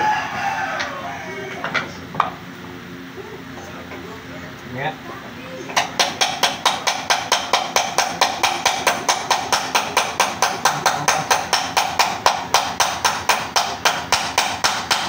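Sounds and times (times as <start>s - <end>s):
rapid sharp ringing knocks: 5.7s - 15.0s.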